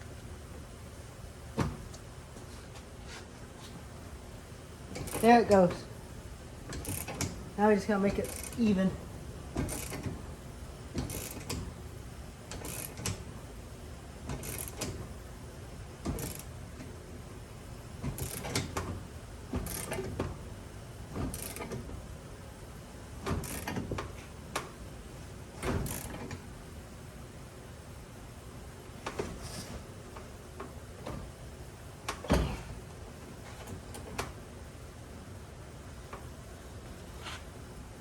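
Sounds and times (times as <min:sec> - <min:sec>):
ratchet wrench clicking: 0:06.8 - 0:07.3, 0:09.6 - 0:10.1, 0:11.0 - 0:11.6, 0:12.5 - 0:13.2, 0:14.4 - 0:15.0, 0:16.1 - 0:16.5, 0:18.2 - 0:18.7, 0:19.6 - 0:20.0, 0:21.3 - 0:21.7, 0:23.4 - 0:23.8, 0:25.8 - 0:26.2.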